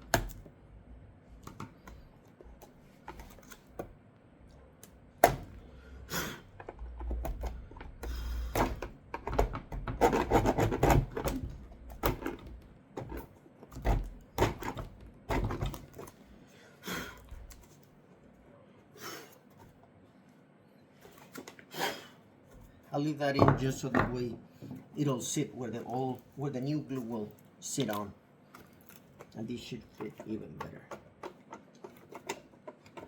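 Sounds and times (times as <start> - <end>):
plastic parts clicking and knocking: 1.4 - 4.0, 6.5 - 16.2, 28.6 - 33.0
plastic rubbing and scraping: 6.5 - 16.2, 28.6 - 33.0.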